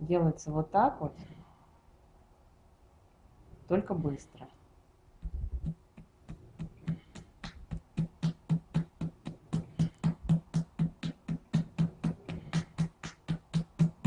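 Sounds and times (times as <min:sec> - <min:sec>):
palm tapping on a back: 0:05.2 - 0:14.0.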